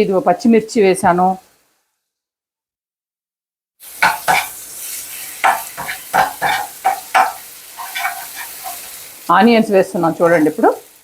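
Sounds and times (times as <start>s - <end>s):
chillies sizzling in hot oil: 0.0s - 2.1s, 3.8s - 11.0s
spatula scraping a pan: 3.8s - 9.1s.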